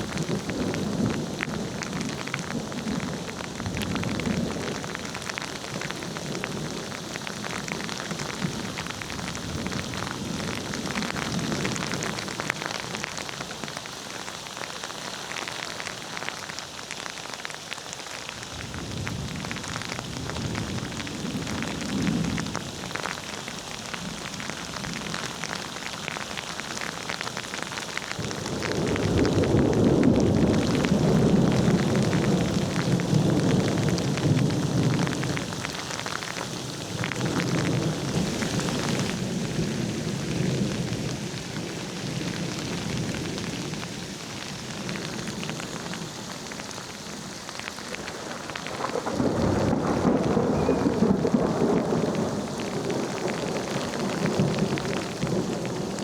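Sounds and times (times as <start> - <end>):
steady rain: 0.0 - 56.0
rolling thunder: 28.2 - 35.8, 48.2 - 56.0.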